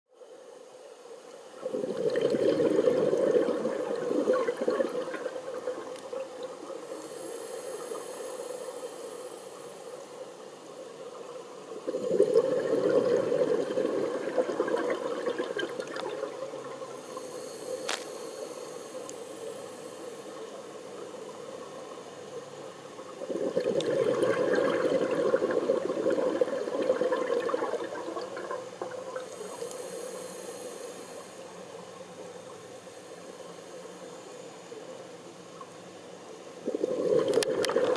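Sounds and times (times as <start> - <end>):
faint regulator hiss: 0.1 - 37.9
diver exhaling bubbles underwater: 1.6 - 5.9, 11.8 - 17.4, 23.2 - 29.3, 36.6 - 37.9.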